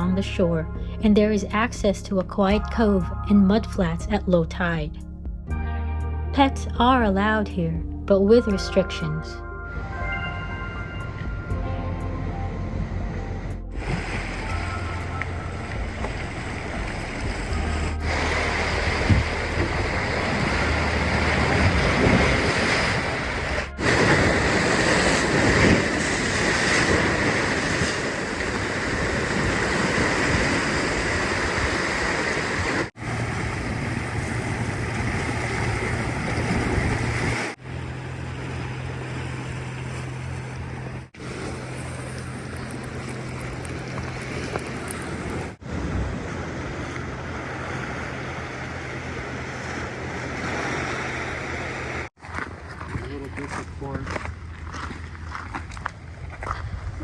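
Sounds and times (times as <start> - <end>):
ocean waves on rocky shore: 9.6 - 52.7
wind on microphone: 9.7 - 37.6, 42.4 - 49.1, 55.7 - 57.0.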